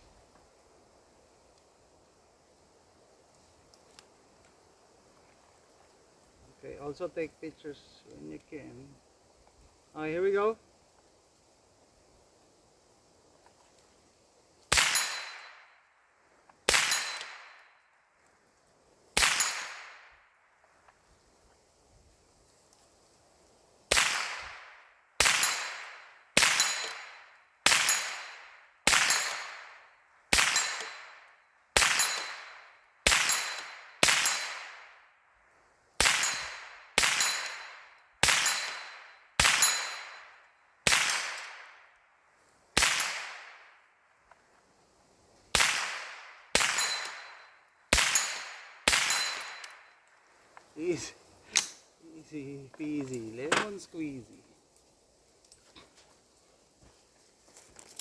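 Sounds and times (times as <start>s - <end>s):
rifle shots echoing: 14.7s - 15.7s, 16.7s - 17.6s, 19.2s - 20.2s, 23.9s - 35.0s, 36.0s - 41.8s, 42.8s - 43.7s, 45.5s - 49.9s.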